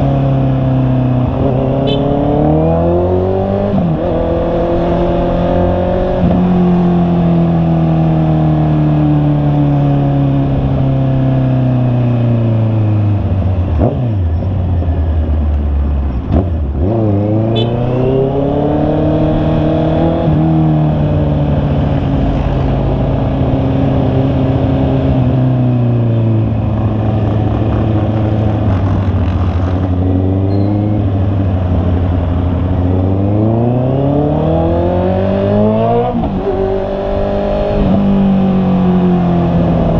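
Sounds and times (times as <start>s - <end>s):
motorcycle engine: 0.0s - 39.9s
road noise: 0.0s - 39.9s.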